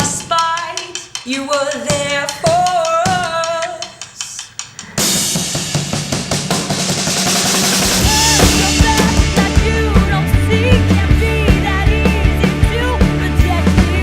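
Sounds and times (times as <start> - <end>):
drums with cymbal crashes: 0.0 - 14.0
bass guitar: 7.8 - 14.0.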